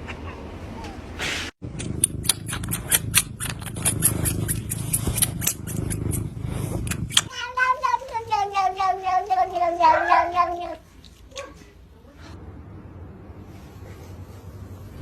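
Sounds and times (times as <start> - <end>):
sharp clicks: 1.7 - 6.1
cat yowling: 7.2 - 10.8.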